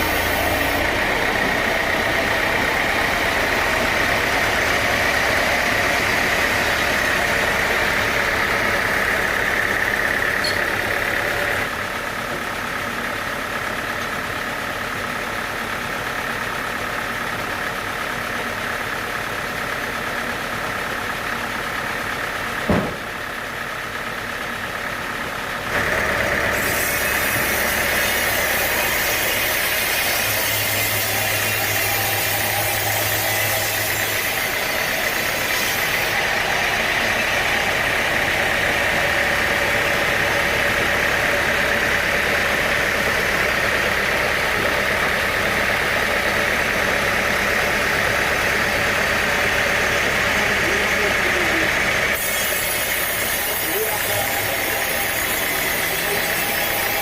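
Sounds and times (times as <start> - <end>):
sawmill machinery humming: 0.0 - 57.0
sharp knock: 22.7 - 23.1.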